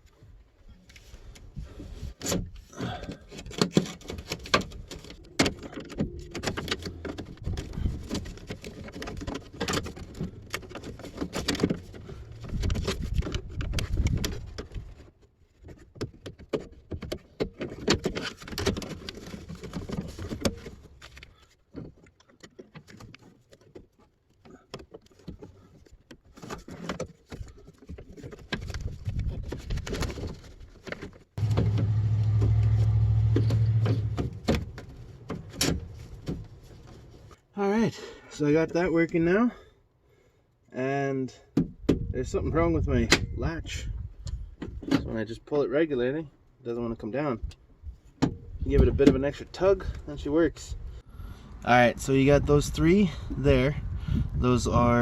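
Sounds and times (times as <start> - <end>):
clicks and rattles of door parts: 2.1 - 37.4
steady low hum: 31.4 - 37.3.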